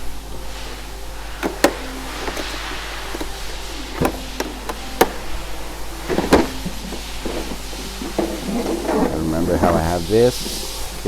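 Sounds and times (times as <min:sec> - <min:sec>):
low background noise: 0:00.0 - 0:11.0
tools clicking and knocking: 0:01.4 - 0:09.8.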